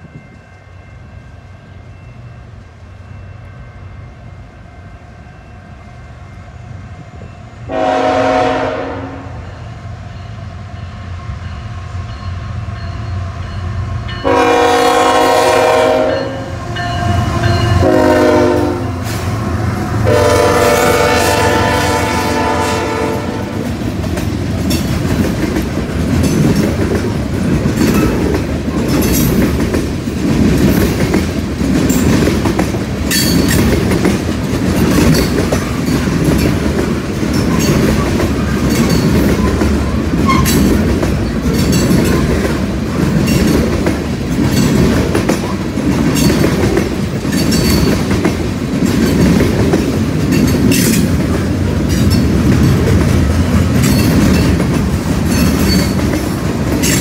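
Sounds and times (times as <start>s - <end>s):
freight train rumble: 0.0s - 57.0s
wheels clacking over rail joints: 23.3s - 57.0s.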